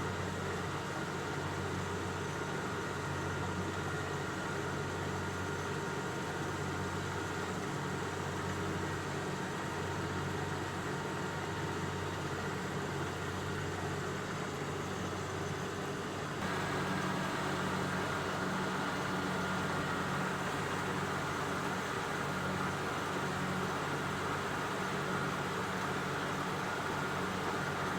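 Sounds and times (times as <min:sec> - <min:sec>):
engine running: 0:16.3 - 0:27.9.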